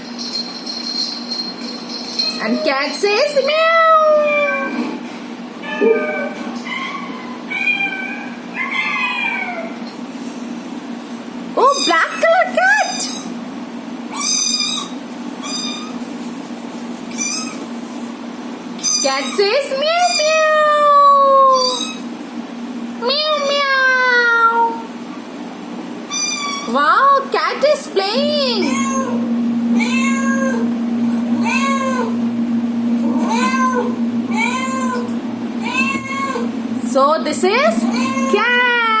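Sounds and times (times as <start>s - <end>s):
cat meowing: 5.6s - 9.8s, 11.6s - 12.2s, 14.1s - 16.0s, 17.1s - 17.6s, 18.8s - 22.0s, 26.1s - 26.8s, 28.6s - 29.2s, 29.8s - 30.7s, 31.4s - 32.2s, 33.0s - 36.5s, 37.8s - 39.0s
low hum: 28.2s - 39.0s.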